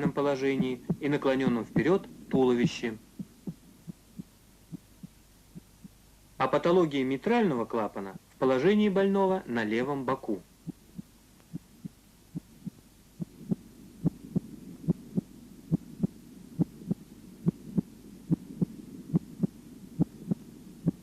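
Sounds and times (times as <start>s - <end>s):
heartbeat lub-dub: 0.0s - 6.0s, 10.6s - 21.0s
faint steady hum: 0.0s - 21.0s.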